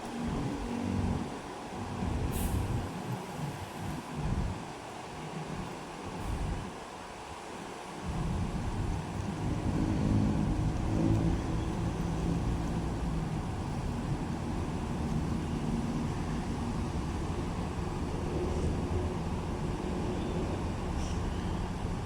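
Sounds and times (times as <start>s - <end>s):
bus diesel engine running: 0.1s - 4.6s, 8.1s - 22.0s.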